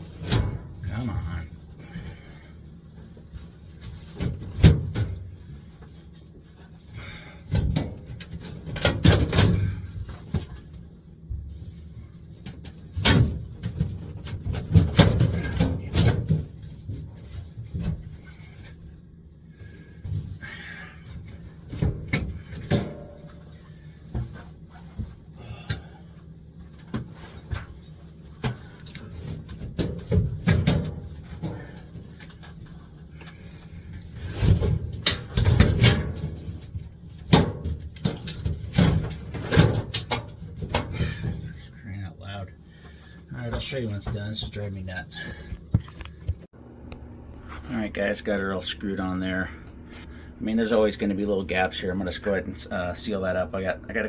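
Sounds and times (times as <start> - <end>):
sheet metal knocks and rattles: 7.5 - 10.5, 12.9 - 17.0, 28.4 - 31.9, 34.3 - 41.5.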